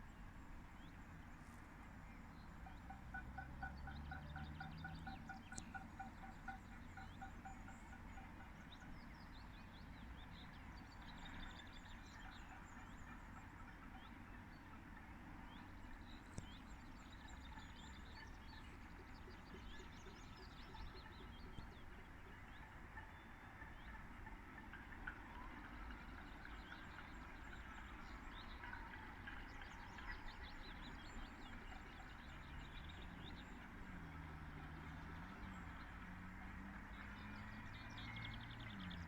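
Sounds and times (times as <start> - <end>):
distant crowd clapping: 18.4 - 39.0.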